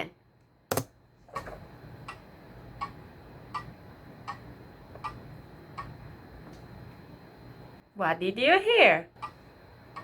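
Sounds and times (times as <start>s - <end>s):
clock ticking: 2.0s - 6.0s, 9.2s - 10.0s.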